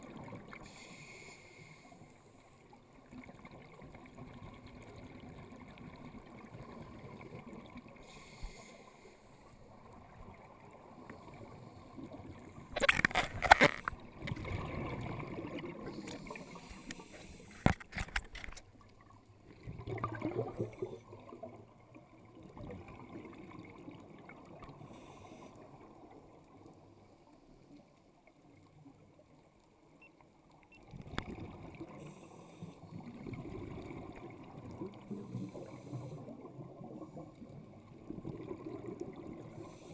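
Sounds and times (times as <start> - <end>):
muffled underwater water hiss: 0.0 - 12.8, 14.0 - 17.8, 18.8 - 30.6, 31.3 - 39.9
exhaled bubbles gurgling: 9.8 - 17.2, 19.0 - 24.9, 30.9 - 32.1, 32.8 - 39.8.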